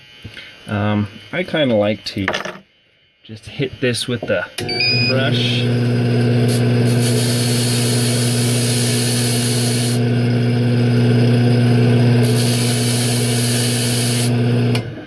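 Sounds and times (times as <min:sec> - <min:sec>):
motor-driven brush wheel humming: 0:04.6 - 0:15.0
brush hissing on metal: 0:06.9 - 0:10.0, 0:12.2 - 0:14.3.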